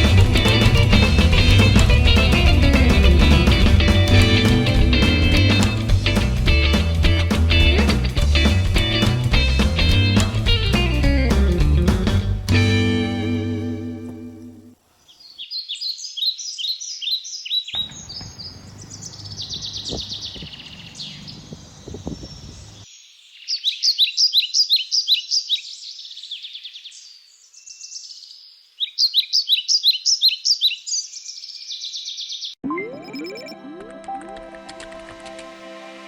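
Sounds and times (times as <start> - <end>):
birds chirping: 0.0 - 33.6.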